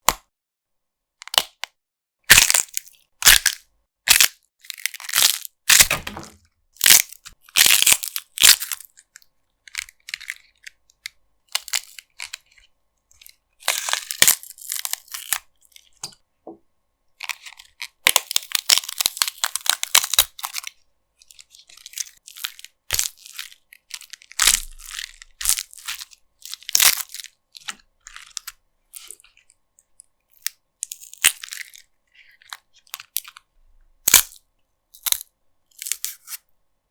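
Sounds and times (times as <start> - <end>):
celery and lettuce snapping: 0.0 - 0.2, 35.8 - 36.4
dense crunching and tearing: 2.3 - 9.1, 9.7 - 10.8, 11.5 - 16.0, 17.2 - 29.5, 30.3 - 33.4, 34.0 - 34.4, 35.0 - 36.4.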